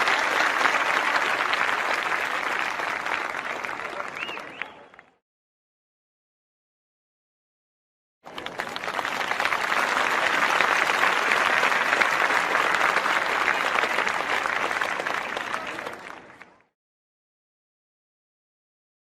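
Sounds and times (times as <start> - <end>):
crowd applause: 0.0 - 5.2, 8.2 - 16.8.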